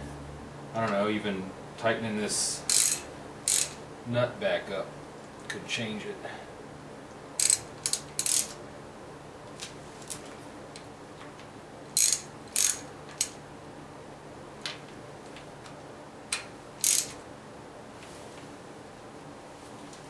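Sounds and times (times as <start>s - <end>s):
wrench clicking and scraping metal: 2.7s - 3.8s, 7.4s - 8.6s, 12.0s - 13.4s, 16.8s - 17.2s.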